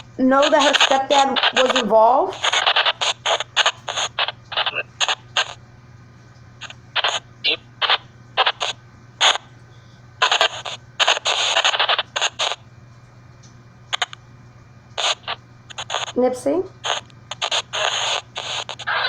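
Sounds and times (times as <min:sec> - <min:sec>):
steady low hum: 0:00.0 - 0:19.0
bursts of hiss and chopped sound: 0:10.2 - 0:12.6, 0:15.0 - 0:16.1, 0:16.8 - 0:19.0.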